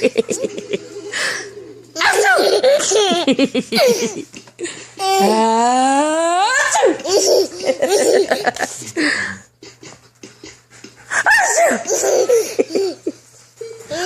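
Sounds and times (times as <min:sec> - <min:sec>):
baby laughing: 0:00.0 - 0:04.3, 0:06.6 - 0:08.7, 0:11.2 - 0:14.0.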